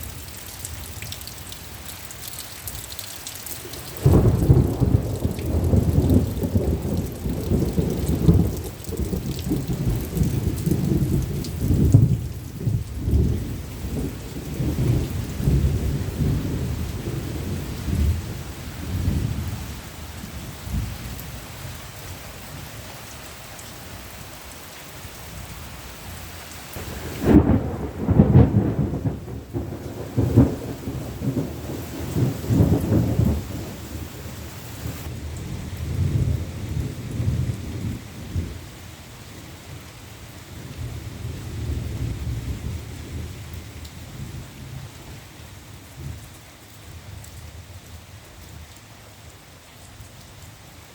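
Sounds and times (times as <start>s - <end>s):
heavy rain: 0.0s - 50.9s
thunder rumbling: 3.6s - 19.7s, 26.8s - 38.6s.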